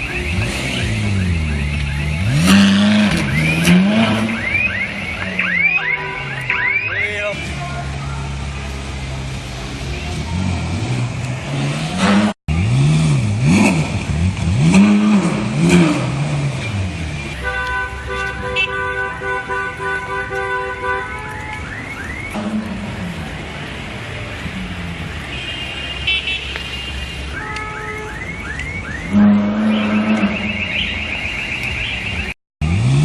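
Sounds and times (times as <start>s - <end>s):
car alarms: 0.0s - 7.4s, 20.7s - 22.4s, 25.4s - 32.4s
sports car engine revving: 0.2s - 4.9s, 10.1s - 17.3s, 32.6s - 33.0s.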